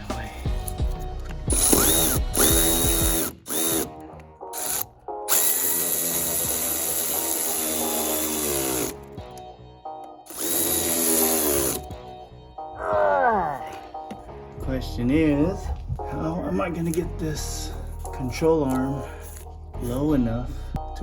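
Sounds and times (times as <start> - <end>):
cordless power tool motor: 1.5 - 4.0, 4.6 - 9.0, 10.3 - 11.9.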